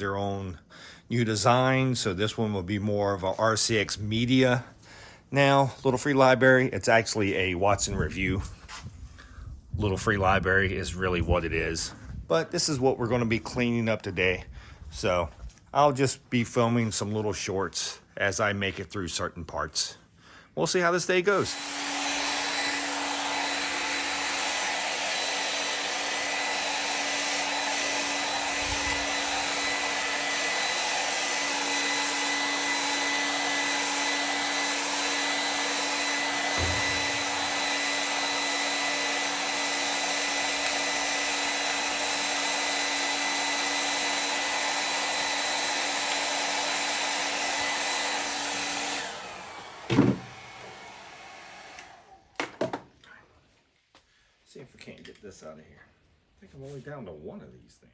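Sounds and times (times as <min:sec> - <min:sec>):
heat gun blowing: 0:21.2 - 0:52.7.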